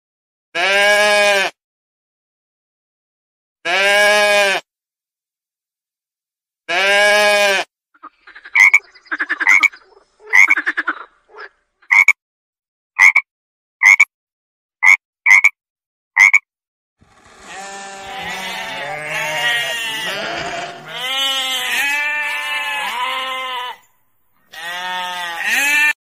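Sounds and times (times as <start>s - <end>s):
frog croaking: 8.0s - 12.2s, 13.0s - 14.1s, 14.8s - 15.6s, 16.2s - 16.4s
long animal call: 17.0s - 23.9s.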